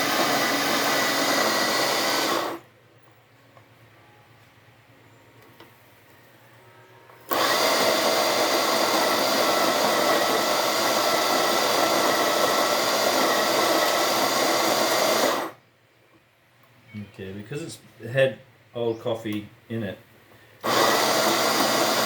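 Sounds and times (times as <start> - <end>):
coffee grinder grinding: 0.0 - 2.6, 7.3 - 15.6, 20.6 - 22.0.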